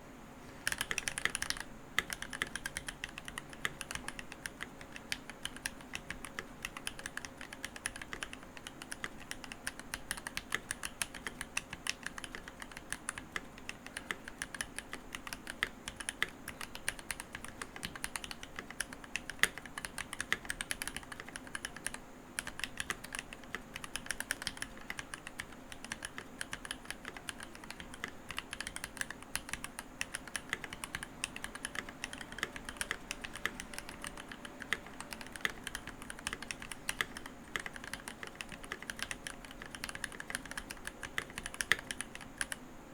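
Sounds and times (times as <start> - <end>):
fast typing on mechanical keyboard: 0.6 - 42.6.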